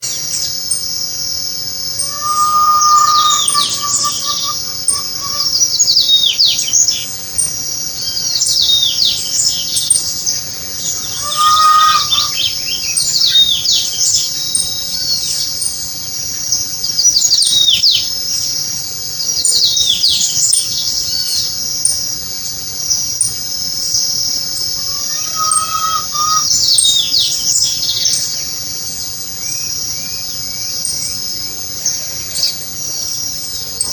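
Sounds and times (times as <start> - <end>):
insects droning: 1.2 - 14.5, 22.0 - 33.9
low whistle-like bird call: 1.9 - 5.7, 10.6 - 13.0, 24.6 - 27.2
songbirds singing: 2.0 - 5.7, 10.7 - 13.0, 24.7 - 27.4.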